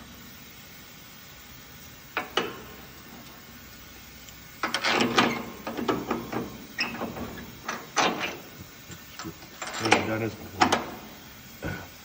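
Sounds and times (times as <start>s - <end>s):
clattering and rattling: 4.6s - 8.6s, 9.2s - 11.0s.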